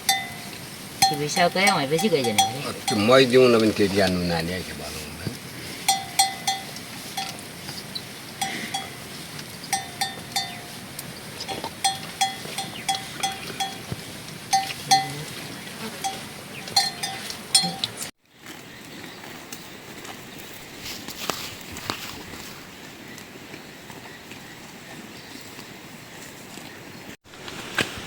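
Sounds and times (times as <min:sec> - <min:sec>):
livestock bells clanking: 0:00.0 - 0:04.6, 0:05.8 - 0:15.4, 0:16.0 - 0:18.1.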